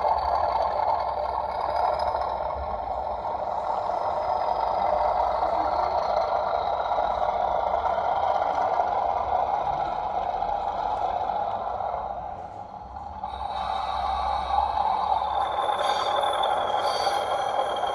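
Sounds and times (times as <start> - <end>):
diesel engine through small speaker: 0.0 - 17.9.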